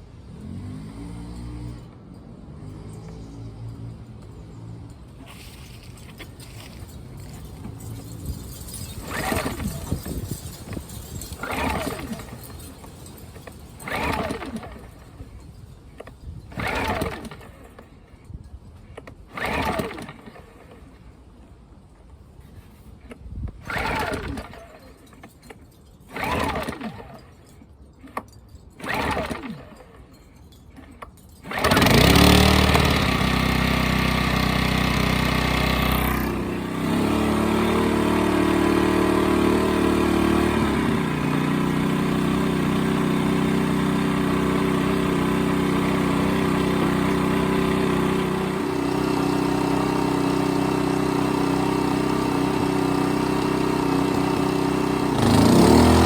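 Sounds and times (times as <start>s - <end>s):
engine cranking: 0.3s - 21.3s, 22.4s - 56.0s
generator engine running: 5.4s - 14.8s, 31.4s - 56.0s.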